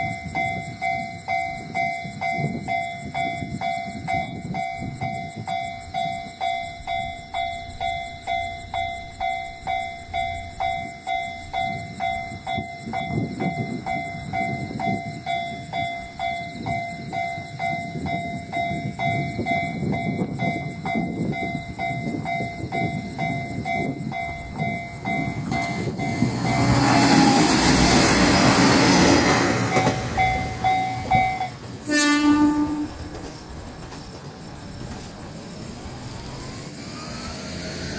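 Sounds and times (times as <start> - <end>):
diesel train passing: 0.0 - 37.9
level crossing bell dinging: 29.6 - 31.6
train horn blast: 31.8 - 33.3.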